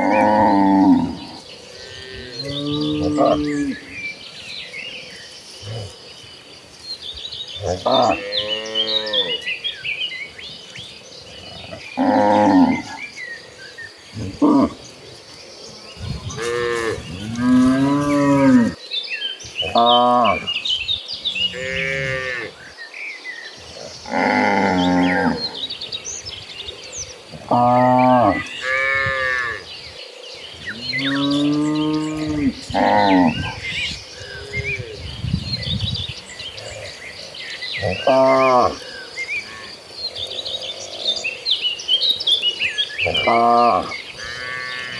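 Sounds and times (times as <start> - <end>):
cattle mooing: 0.0 - 3.9, 7.6 - 9.4, 16.2 - 18.8, 30.8 - 33.6
cows mooing: 0.0 - 4.0, 7.6 - 9.5, 11.3 - 13.2, 16.0 - 18.8, 21.3 - 22.6, 23.8 - 25.7, 27.4 - 29.7, 30.7 - 35.0, 37.8 - 39.7, 43.0 - 44.9
birds chirping: 0.0 - 44.9.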